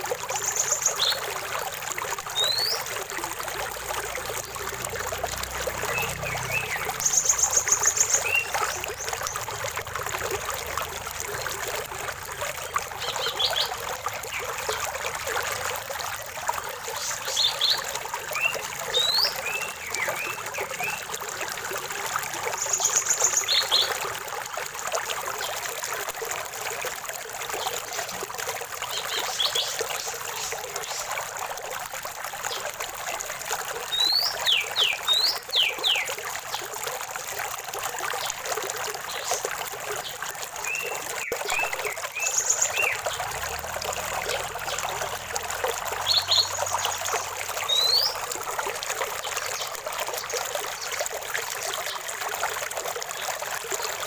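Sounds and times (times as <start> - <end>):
stream water trickling: 0.0 - 54.0
birds chirping and whistling: 2.4 - 2.8, 46.0 - 48.2.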